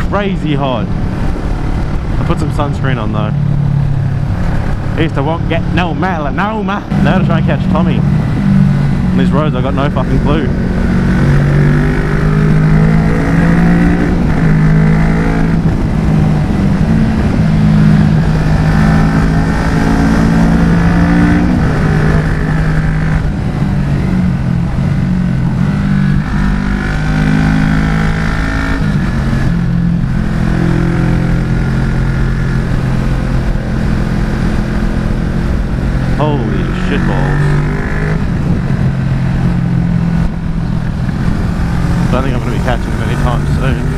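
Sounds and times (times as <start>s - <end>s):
wind rush on microphone: 0.0s - 27.1s, 37.5s - 43.9s
motorcycle engine accelerating: 0.0s - 43.9s.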